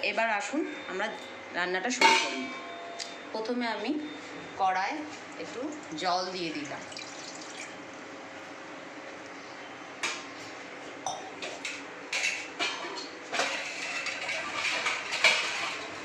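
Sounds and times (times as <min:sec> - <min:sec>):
metal cookware clanking: 0:02.0 - 0:03.0, 0:11.1 - 0:16.0.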